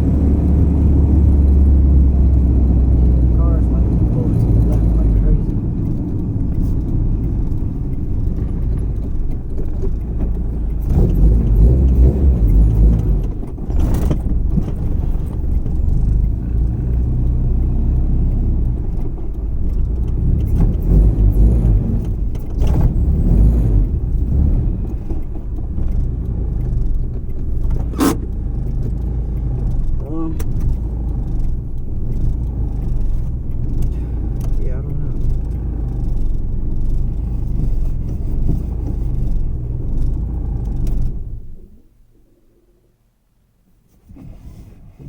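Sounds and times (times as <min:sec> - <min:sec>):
car engine and road rumble: 0:00.0 - 0:45.0
light rattles: 0:04.4 - 0:20.9, 0:23.8 - 0:41.7.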